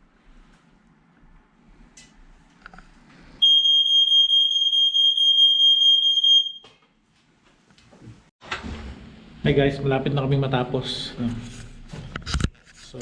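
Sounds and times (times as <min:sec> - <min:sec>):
smoke alarm high-pitched tone: 0:03.4 - 0:06.7.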